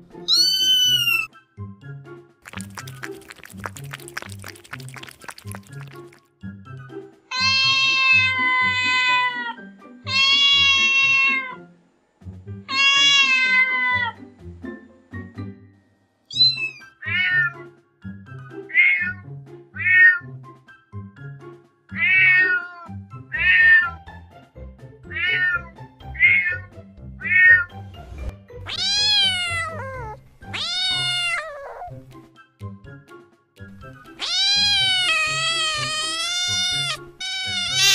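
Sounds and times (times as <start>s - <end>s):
cat meowing: 0.3s - 1.3s, 7.3s - 11.6s, 12.7s - 14.2s, 16.3s - 17.6s, 18.7s - 19.2s, 19.8s - 20.2s, 22.0s - 24.0s, 25.1s - 26.6s, 27.2s - 27.7s, 28.7s - 32.0s, 34.2s - 37.9s
background music with steady beat: 9.7s - 13.0s, 14.2s - 16.2s, 23.1s - 29.0s, 32.0s - 35.6s.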